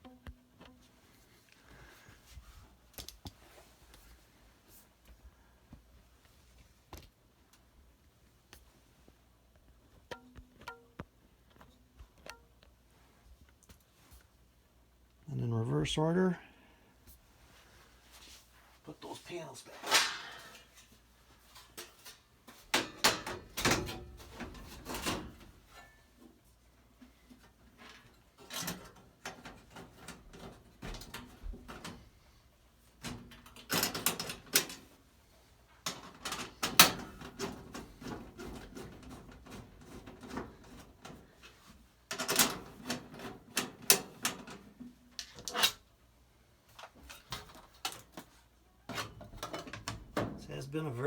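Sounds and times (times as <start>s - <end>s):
metal panels clanking: 21.6s - 26.0s, 35.9s - 41.2s.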